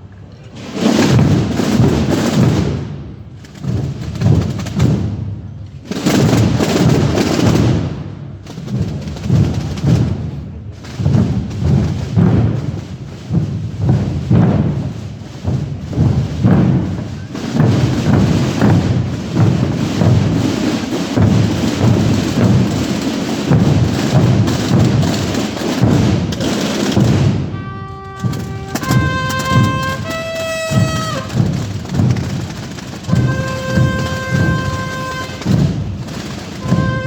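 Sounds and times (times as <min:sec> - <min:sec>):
drums beating fast rhythm: 0:00.8 - 0:37.0
horn playing held notes: 0:27.5 - 0:31.6, 0:33.1 - 0:35.9, 0:36.6 - 0:37.0.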